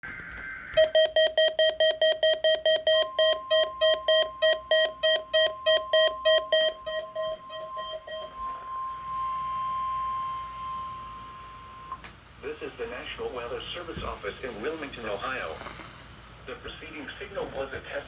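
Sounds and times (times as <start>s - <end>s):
steady warning alarm tone: 0.7s - 12.0s
rapid alert beeping: 0.8s - 8.8s.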